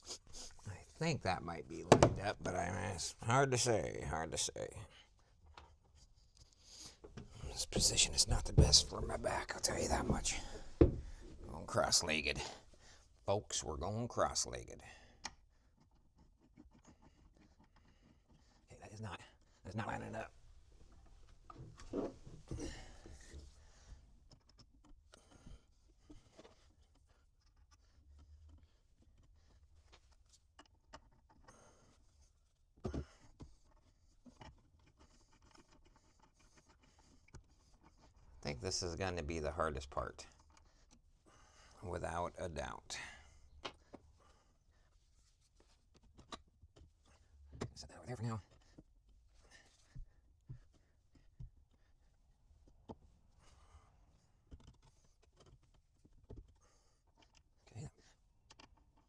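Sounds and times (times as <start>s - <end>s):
faint knocks and clicks: 1.9s - 2.6s, 6.9s - 11.8s
faint scraping: 6.7s - 12.7s.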